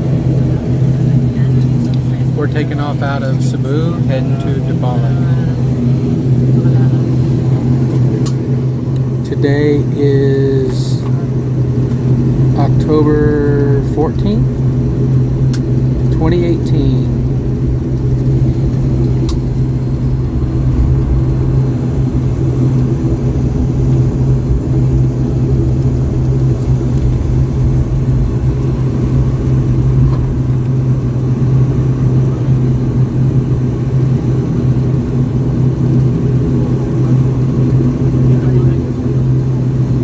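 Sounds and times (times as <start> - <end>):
turboprop engine drone in cabin: 0.0 - 40.0.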